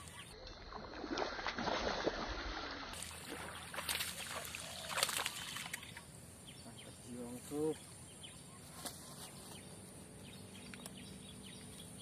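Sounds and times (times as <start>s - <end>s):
water splashing and sloshing: 0.0s - 6.2s.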